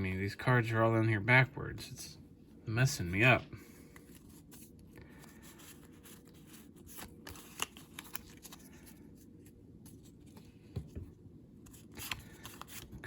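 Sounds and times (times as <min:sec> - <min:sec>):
cards rustling and shuffling: 0:03.2 - 0:13.0.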